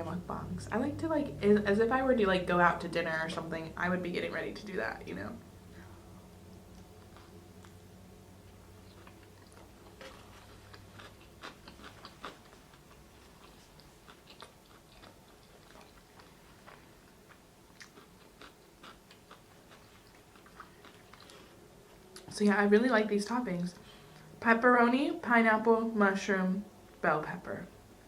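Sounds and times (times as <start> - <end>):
person chewing: 6.7 - 7.8, 8.8 - 21.6.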